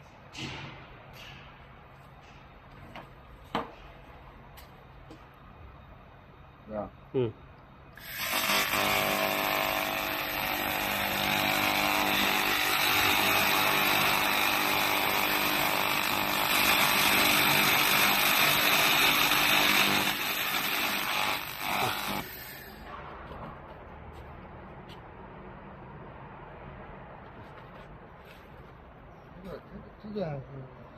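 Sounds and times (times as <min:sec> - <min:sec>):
laser buzzing crackle on metal: 0:08.0 - 0:22.4.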